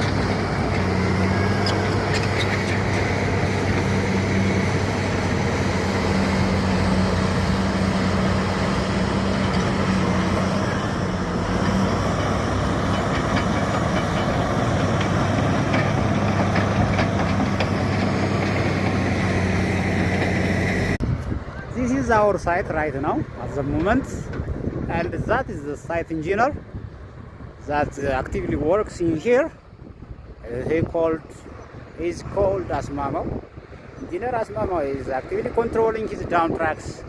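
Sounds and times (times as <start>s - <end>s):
heavy machinery diesel engine running: 0.0s - 22.1s.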